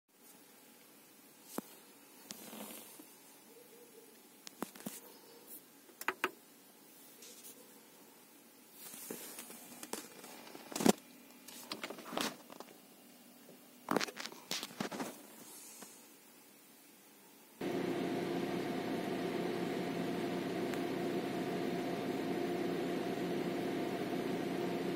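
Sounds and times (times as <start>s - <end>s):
sharp clicks and knocks: 5.9s - 6.4s.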